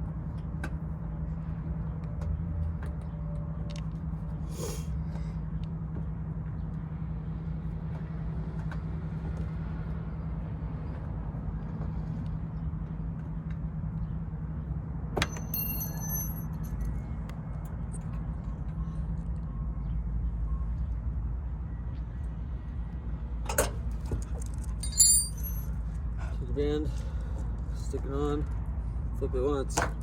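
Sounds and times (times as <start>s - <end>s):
sharp metallic clink: 15.2s - 16.8s, 24.8s - 25.7s.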